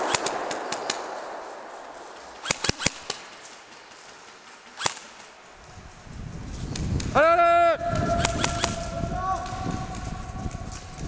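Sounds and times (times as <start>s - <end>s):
airsoft guns firing: 0.0s - 5.6s, 7.9s - 11.0s.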